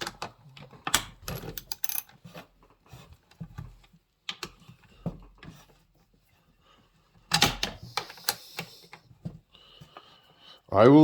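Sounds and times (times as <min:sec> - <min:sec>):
tools clicking and knocking: 0:00.0 - 0:02.2.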